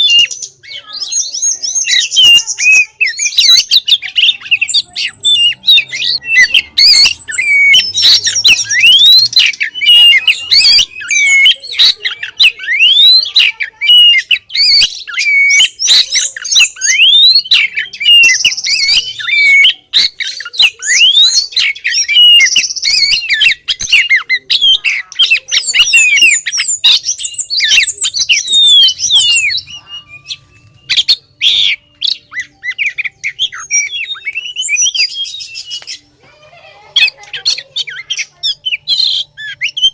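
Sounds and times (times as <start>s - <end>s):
bird calling with scratchy notes: 0.0s - 39.9s.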